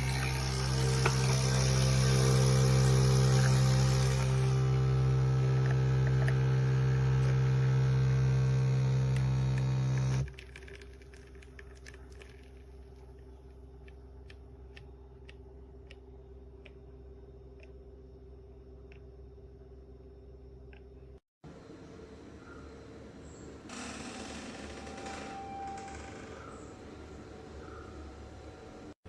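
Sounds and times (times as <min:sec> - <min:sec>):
coffee machine pump humming: 0:00.0 - 0:21.2
faint coffee drips: 0:10.3 - 0:15.4.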